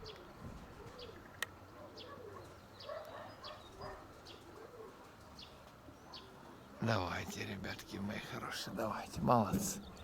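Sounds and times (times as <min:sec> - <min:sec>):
pigeons cooing: 0:00.0 - 0:06.8.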